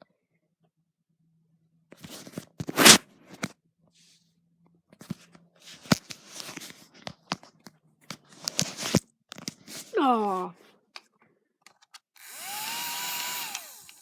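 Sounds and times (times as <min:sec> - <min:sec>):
rustling and crunching handling noises: 0:05.0 - 0:10.0
sharp clicks: 0:13.2 - 0:14.0.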